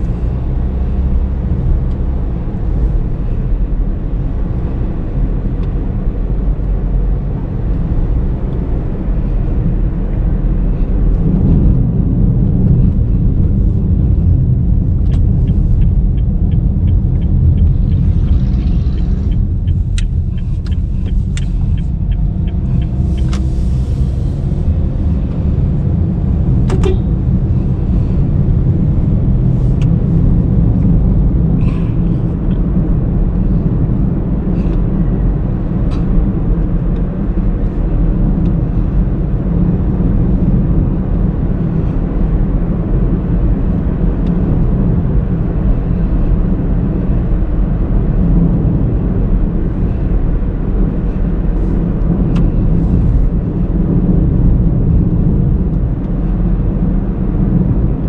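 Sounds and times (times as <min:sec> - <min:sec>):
car engine and road noise: 0:00.0 - 0:58.0
even ticks: 0:15.1 - 0:23.4.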